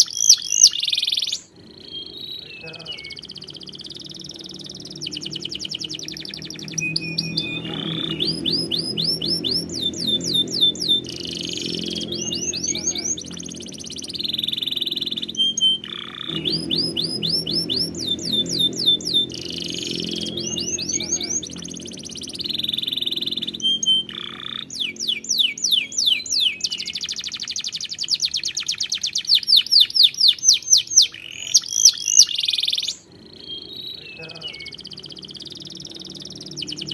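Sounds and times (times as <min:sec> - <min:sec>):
canary singing: 0:00.0 - 0:36.9
low steady hum: 0:01.4 - 0:28.6, 0:33.0 - 0:36.9.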